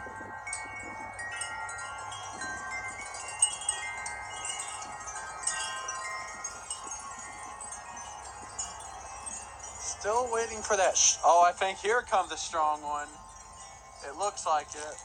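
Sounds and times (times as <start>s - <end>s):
wind chimes ringing: 0.0s - 15.0s.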